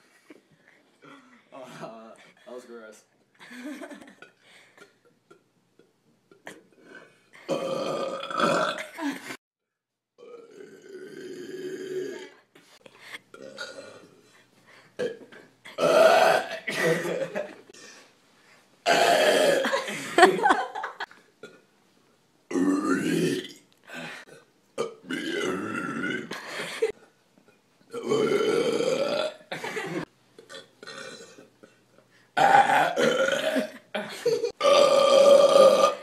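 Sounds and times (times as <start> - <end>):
person belching: 6.5 - 8.9, 10.2 - 12.4, 13.4 - 14.1, 15.8 - 16.6, 18.9 - 19.8, 22.5 - 23.6, 24.8 - 26.4, 27.9 - 29.5, 30.5 - 31.5, 32.4 - 33.8, 34.5 - 36.0.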